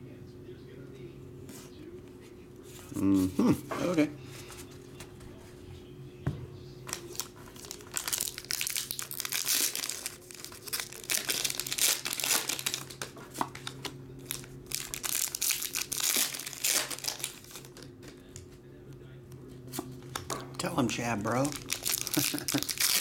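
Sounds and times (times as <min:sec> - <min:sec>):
plastic wrapping crinkling and tearing: 0:06.9 - 0:17.9, 0:21.3 - 0:23.0.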